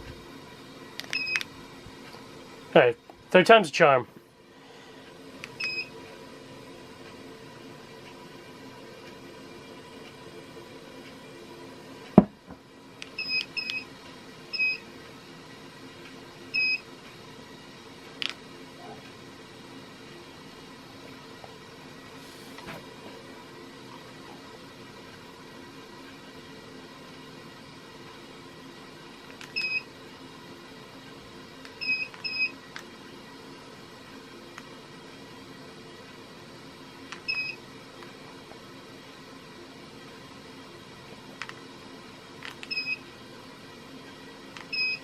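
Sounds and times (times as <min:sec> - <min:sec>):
ceiling fan humming: 0:00.0 - 0:45.0
ceiling fan receiver beeping: 0:01.0 - 0:01.5, 0:05.1 - 0:12.1, 0:13.0 - 0:14.9, 0:16.0 - 0:17.3, 0:29.5 - 0:29.9, 0:31.8 - 0:32.6, 0:37.1 - 0:37.7, 0:42.6 - 0:43.1, 0:44.6 - 0:45.0.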